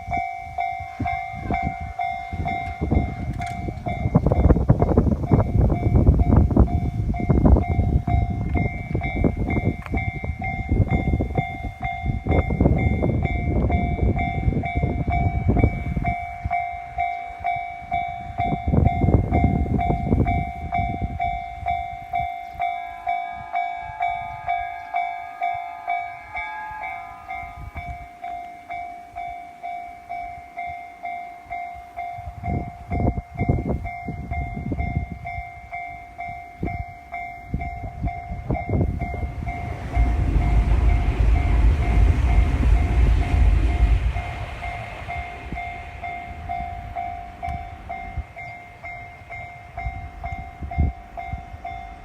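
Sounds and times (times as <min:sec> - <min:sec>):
level-crossing bell clanging: 0:00.0 - 0:52.0
train rumble and wheel clatter: 0:00.0 - 0:52.0.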